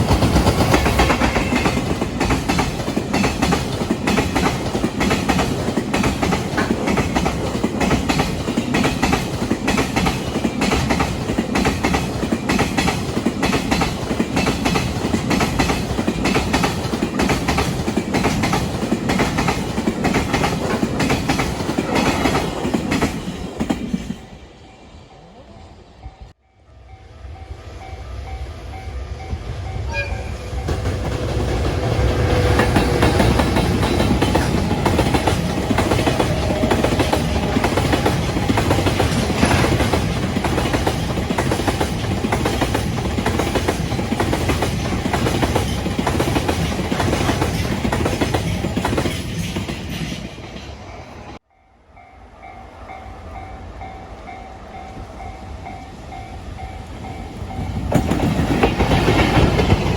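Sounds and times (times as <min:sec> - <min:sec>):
train wheels clattering over rail joints: 0:00.0 - 0:24.0, 0:30.6 - 0:50.7, 0:57.5 - 0:59.9
train rumble: 0:00.0 - 0:59.9.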